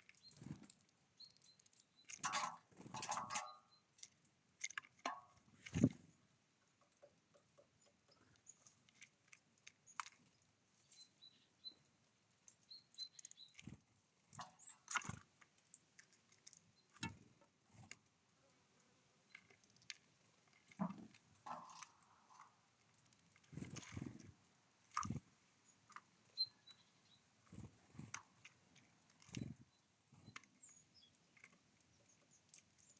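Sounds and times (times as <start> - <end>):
birds pecking and hopping on feeder: 0.0 - 32.9
faint high bird chirps: 10.8 - 11.9, 12.6 - 13.8, 25.6 - 27.7.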